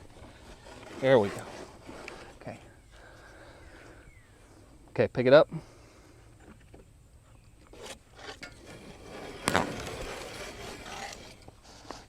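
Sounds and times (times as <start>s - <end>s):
wood board scraping: 0.0s - 2.7s, 7.7s - 12.0s.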